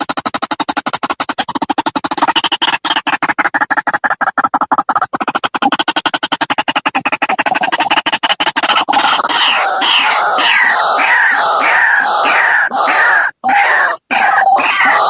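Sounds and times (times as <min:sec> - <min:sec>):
waterhen clicking: 0:00.0 - 0:15.0
waterhen calls falling in pitch: 0:08.9 - 0:15.0.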